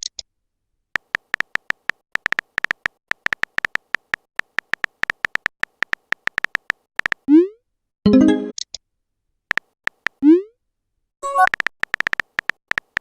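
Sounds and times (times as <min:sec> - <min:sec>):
phone keyboard key clicks: 0:01.0 - 0:07.2, 0:11.4 - 0:13.0.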